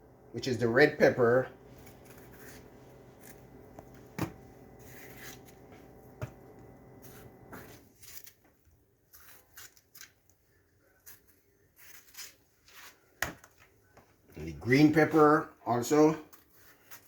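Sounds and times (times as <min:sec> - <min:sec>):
low steady hum: 0:00.0 - 0:08.0.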